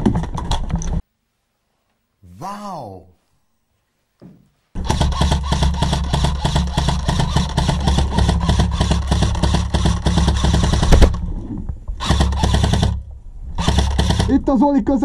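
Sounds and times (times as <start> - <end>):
gearbox motor whir: 4.8 - 11.1, 12.0 - 13.0, 13.6 - 14.4
airsoft gun firing full auto: 4.8 - 11.2, 12.0 - 13.0, 13.6 - 14.4.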